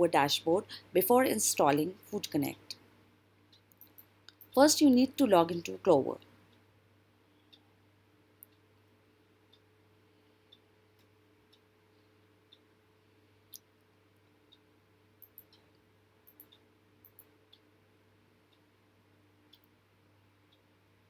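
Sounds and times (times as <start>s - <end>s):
faint steady hum: 0.0s - 21.0s.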